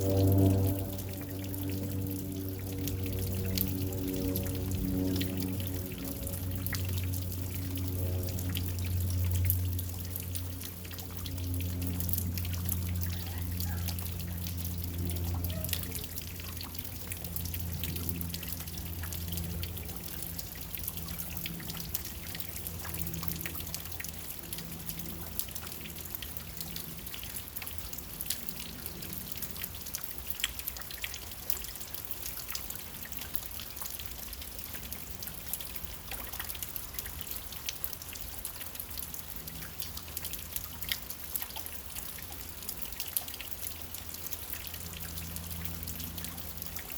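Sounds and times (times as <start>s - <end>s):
low hum: 0.0s - 29.6s
steady rain with ticking drops: 0.0s - 46.9s.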